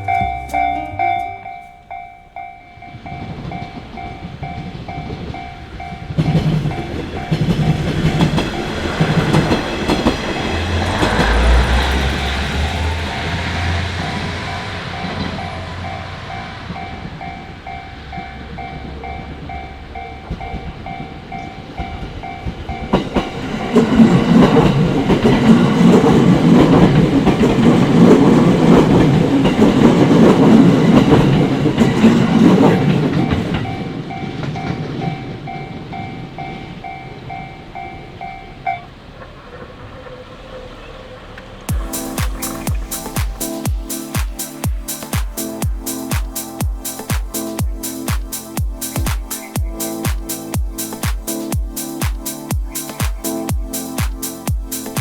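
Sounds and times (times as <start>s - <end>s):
level crossing bell ringing: 0.0s - 8.7s, 41.7s - 55.0s
train wheels clattering over rails: 2.8s - 36.6s.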